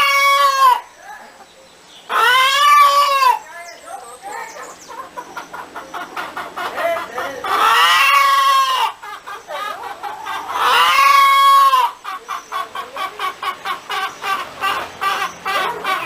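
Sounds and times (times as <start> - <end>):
hen cackling: 0.0 - 1.5, 2.1 - 16.0.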